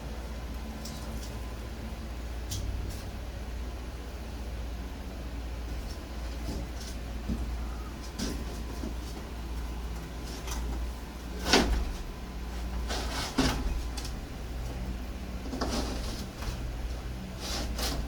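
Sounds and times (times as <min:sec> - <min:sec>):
steady low hum: 0:00.0 - 0:18.0
wooden board scraping: 0:11.4 - 0:14.0, 0:15.4 - 0:16.8, 0:17.4 - 0:18.0.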